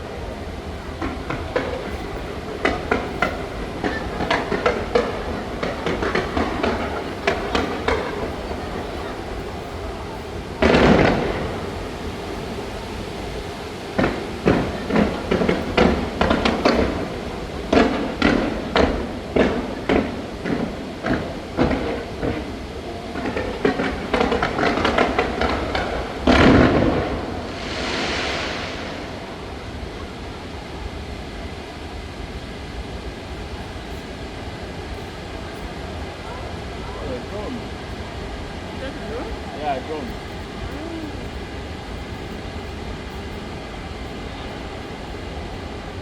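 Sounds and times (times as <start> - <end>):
fireworks bangs: 0.0 - 22.6, 23.2 - 30.9
crackling hiss: 0.0 - 46.0.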